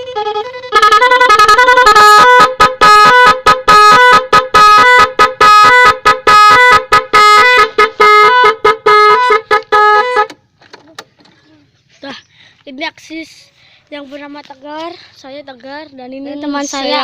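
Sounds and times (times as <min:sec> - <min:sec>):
multi-tone musical horn: 0:00.0 - 0:10.4.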